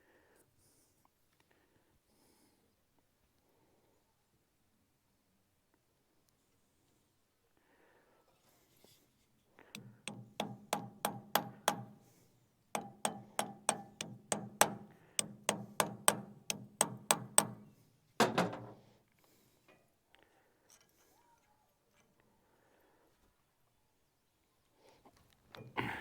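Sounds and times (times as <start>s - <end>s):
hammer striking metal: 9.8s - 12.0s, 12.8s - 18.8s.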